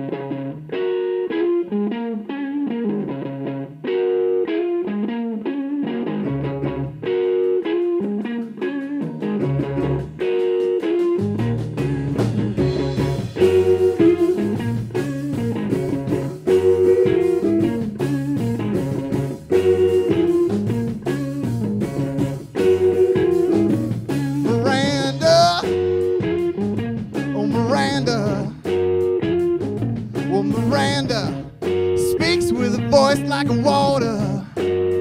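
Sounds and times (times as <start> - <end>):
picked electric guitar: 0.0 - 35.0
rock band playing: 0.0 - 35.0.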